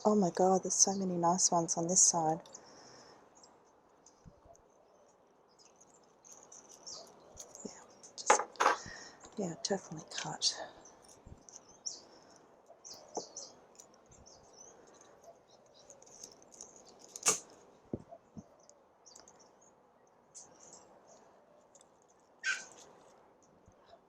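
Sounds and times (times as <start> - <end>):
hands rustling plant: 0.0 - 19.6, 20.2 - 24.0
plant stem snapping: 16.2 - 17.5.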